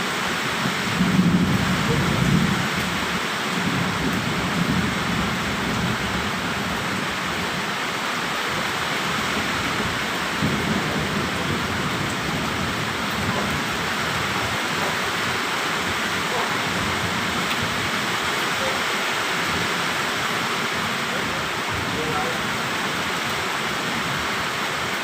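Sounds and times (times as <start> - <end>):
heavy rain pouring: 0.0 - 25.0
rolling thunder: 0.6 - 7.5, 8.7 - 18.0.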